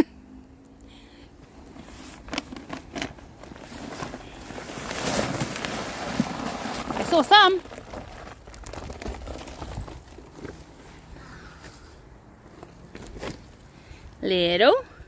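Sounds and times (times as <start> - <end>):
potting soil rustling: 1.5 - 11.1.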